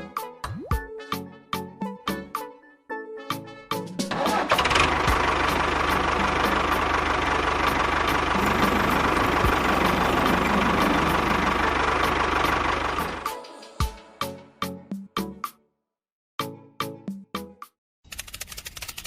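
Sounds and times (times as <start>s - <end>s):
small engine running: 4.3s - 13.4s.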